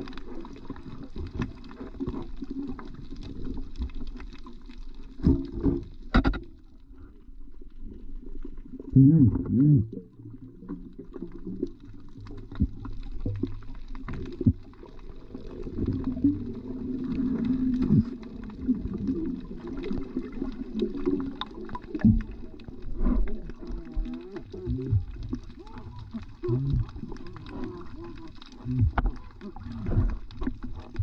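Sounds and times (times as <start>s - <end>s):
muffled underwater water noise: 0.0s - 31.0s
underwater clicks and knocks: 5.1s - 6.8s, 26.1s - 31.0s.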